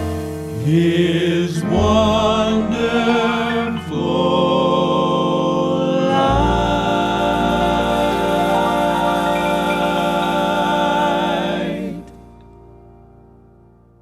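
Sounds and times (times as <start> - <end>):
deep bass note: 0.0 - 2.9
male vocal quartet singing: 0.0 - 12.5.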